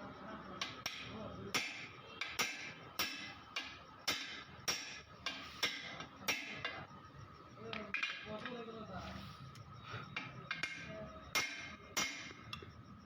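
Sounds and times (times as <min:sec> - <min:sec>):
hammer striking metal rim: 0:00.6 - 0:06.7, 0:10.6 - 0:12.4.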